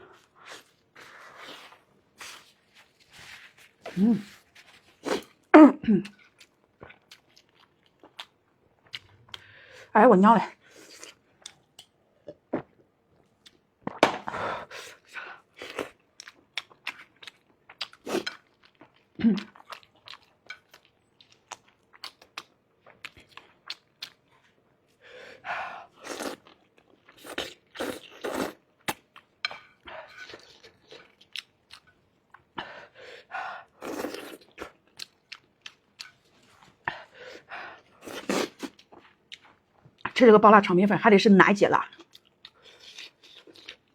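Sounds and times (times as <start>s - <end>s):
person chewing food: 0.0s - 9.6s, 10.7s - 40.1s, 42.0s - 43.9s.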